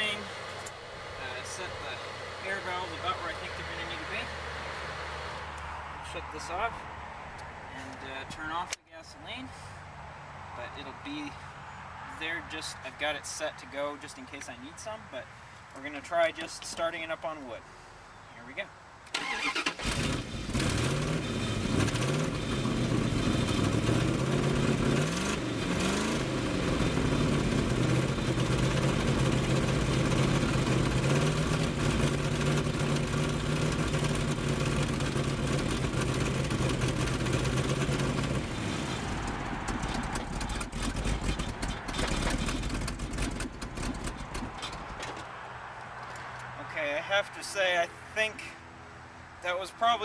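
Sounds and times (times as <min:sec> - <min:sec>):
truck engine revving: 0:00.0 - 0:05.7, 0:19.2 - 0:44.9.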